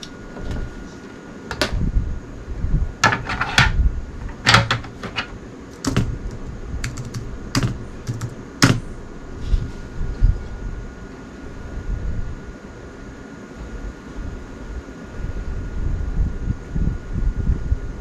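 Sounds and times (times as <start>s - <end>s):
computer keyboard typing: 5.7s - 8.9s.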